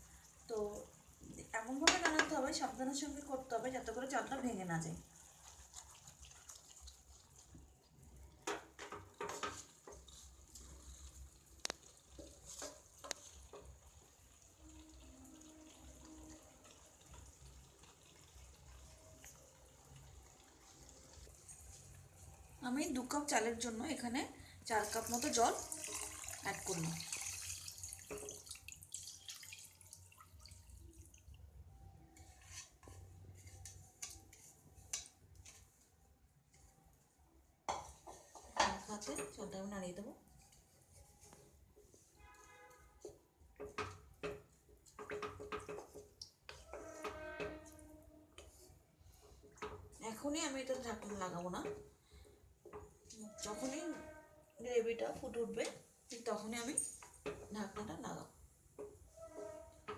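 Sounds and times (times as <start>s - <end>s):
water dripping: 0.0s - 22.6s, 24.6s - 31.7s, 42.4s - 47.8s
water pouring into pot: 0.0s - 22.7s, 24.6s - 31.4s
spatula scraping a pot: 9.2s - 13.8s, 32.2s - 35.6s, 44.9s - 49.9s, 58.8s - 59.9s.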